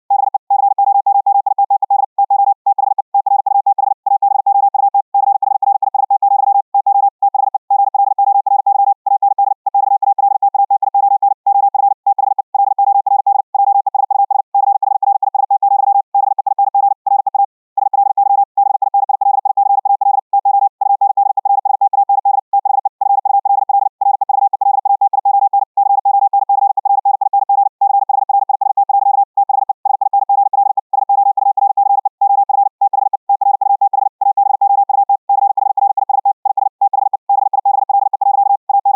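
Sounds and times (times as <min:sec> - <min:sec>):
morse code tone: 0:15.6 - 0:24.9, 0:27.8 - 0:38.9.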